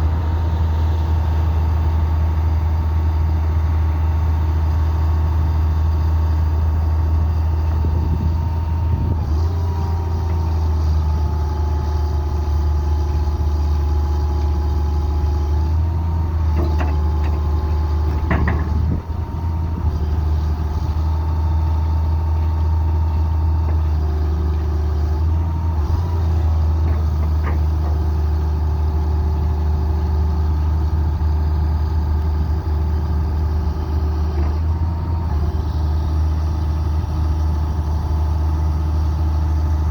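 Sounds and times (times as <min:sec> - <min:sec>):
excavator diesel engine running: 0:00.0 - 0:39.9
brief clunk: 0:16.5 - 0:17.4, 0:18.1 - 0:18.9.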